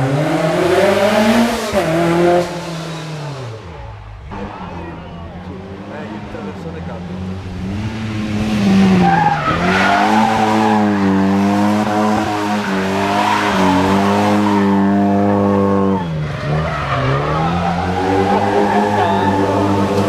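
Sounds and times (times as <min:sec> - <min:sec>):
rally car engine at high revs: 0:00.0 - 0:20.0
tyres squealing on tarmac: 0:09.0 - 0:11.3, 0:11.9 - 0:20.0.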